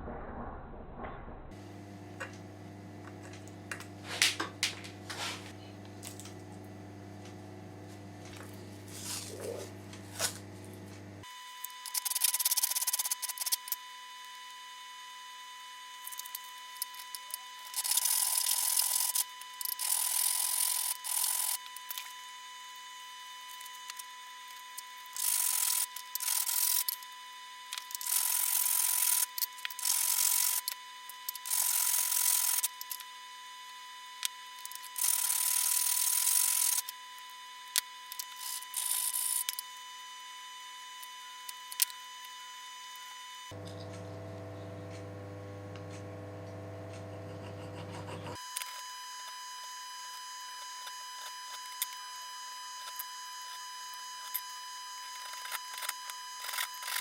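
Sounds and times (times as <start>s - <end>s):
low hum: 0.0s - 2.4s
rasping abrasion strokes: 47.2s - 48.4s.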